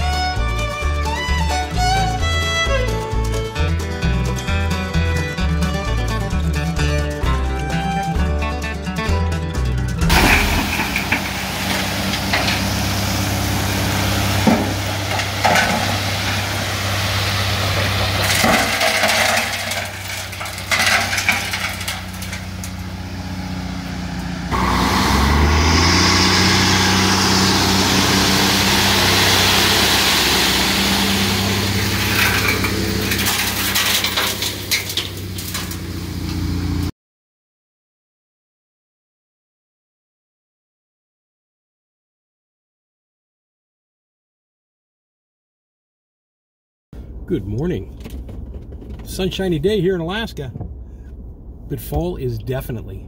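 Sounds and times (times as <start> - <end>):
truck engine running: 0.0 - 36.9, 47.0 - 51.6
knocks and rattles: 10.0 - 24.6, 27.2 - 36.9, 47.8 - 49.6.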